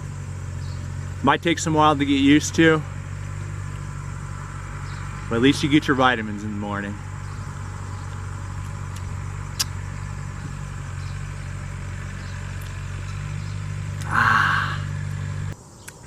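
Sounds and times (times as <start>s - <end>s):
engine humming: 0.0s - 16.0s
sharp click: 8.9s - 9.8s.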